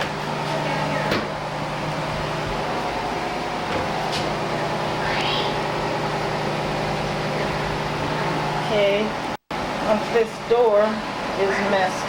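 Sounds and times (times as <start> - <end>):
electrical hum: 0.0 - 12.0
short rising squeak: 5.0 - 5.8.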